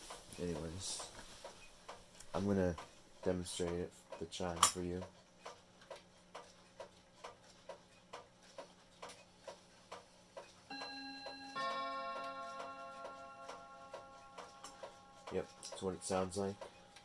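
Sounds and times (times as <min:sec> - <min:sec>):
clock ticking: 0:00.0 - 0:17.0
clock chime rods ringing: 0:10.7 - 0:17.0
person speaking: 0:11.6 - 0:16.8.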